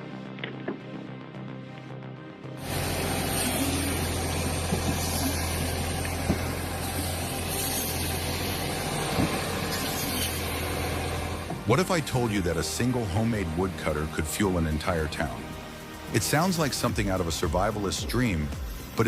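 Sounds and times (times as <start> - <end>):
heavy machinery running: 2.6 - 19.0.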